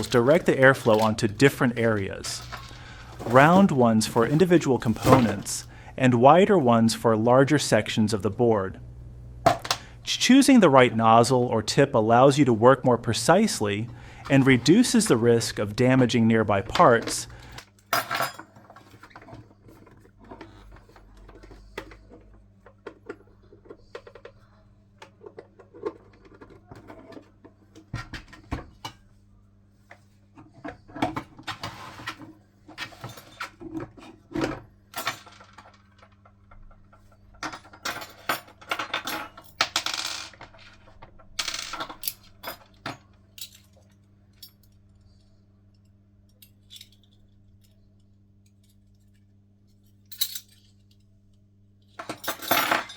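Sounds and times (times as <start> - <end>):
small metal parts clinking: 0.0 - 5.7, 41.4 - 44.8, 46.4 - 47.8, 49.9 - 51.1, 52.0 - 52.9
steady low hum: 0.0 - 18.4.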